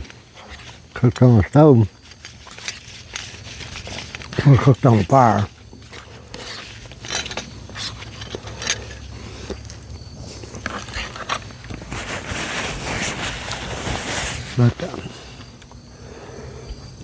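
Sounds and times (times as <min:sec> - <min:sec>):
utensils clicking and scraping: 0:00.0 - 0:15.8
soft hiss: 0:10.2 - 0:16.8.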